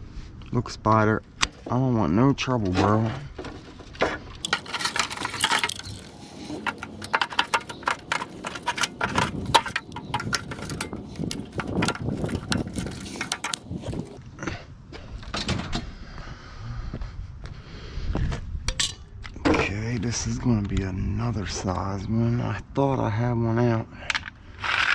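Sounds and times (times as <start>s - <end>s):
hand tools clicking on metal: 4.4s - 14.2s.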